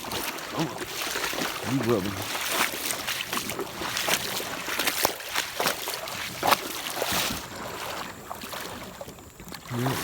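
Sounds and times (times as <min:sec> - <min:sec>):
water splashing in a river: 0:00.0 - 0:10.0.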